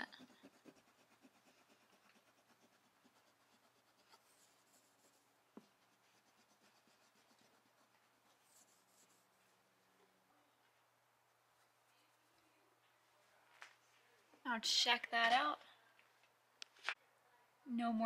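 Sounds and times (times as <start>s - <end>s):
eraser rubbing on painted surface: 0.0s - 9.3s.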